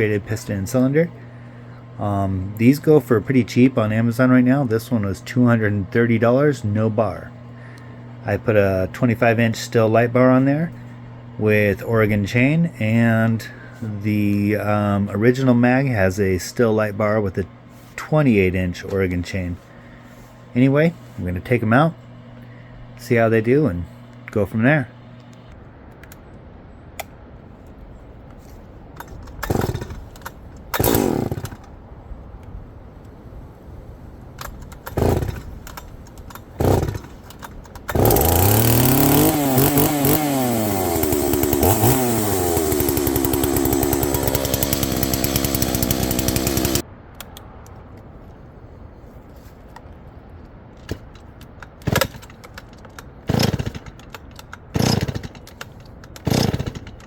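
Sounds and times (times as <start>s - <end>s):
chainsaw engine revving: 0.0s - 25.5s, 29.4s - 31.7s, 34.8s - 46.8s, 51.8s - 52.6s, 53.2s - 57.0s
chainsaw starter cord pulls: 0.0s - 25.5s, 29.0s - 31.8s, 34.4s - 47.4s, 50.8s - 57.0s.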